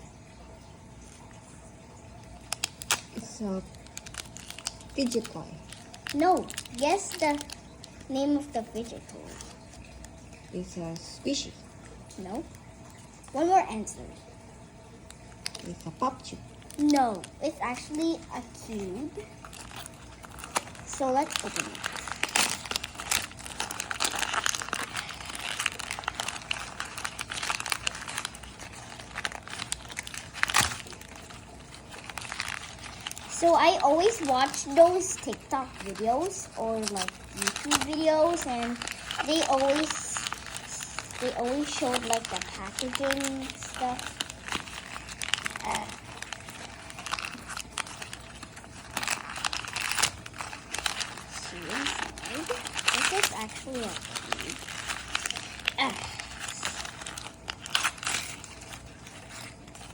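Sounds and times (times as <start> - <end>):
packaging crinkling and tearing: 0.3 - 59.9.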